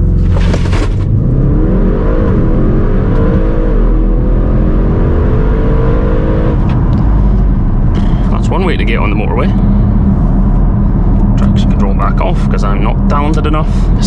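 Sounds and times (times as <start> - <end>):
car engine accelerating: 0.0 - 14.0.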